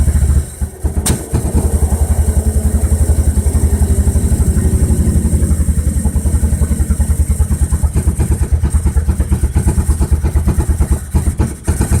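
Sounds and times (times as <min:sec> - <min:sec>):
engine idling roughly: 0:00.0 - 0:12.0.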